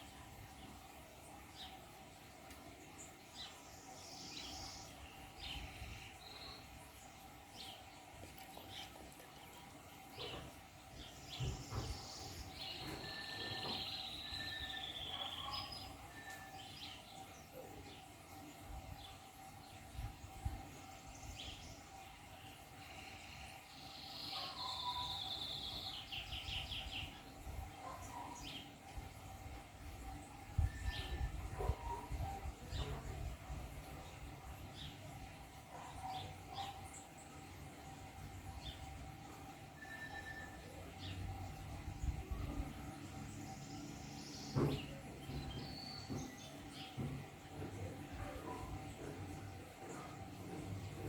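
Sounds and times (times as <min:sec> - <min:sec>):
birds chirping: 0:00.0 - 0:51.0
faint steady tone: 0:37.8 - 0:44.7.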